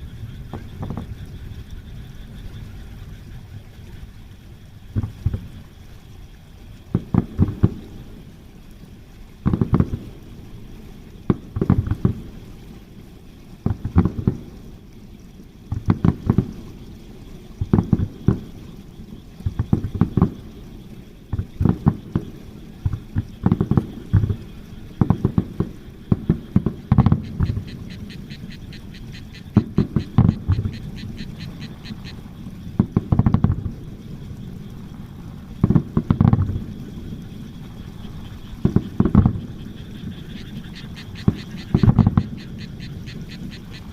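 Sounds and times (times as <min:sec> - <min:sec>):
fireworks bangs: 0:04.9 - 0:05.5, 0:06.9 - 0:08.0, 0:09.4 - 0:10.2, 0:11.2 - 0:12.4, 0:15.7 - 0:16.6, 0:17.6 - 0:18.6, 0:19.4 - 0:20.5, 0:21.3 - 0:28.2, 0:29.4 - 0:31.4, 0:32.7 - 0:33.9, 0:35.5 - 0:36.7, 0:38.1 - 0:39.5.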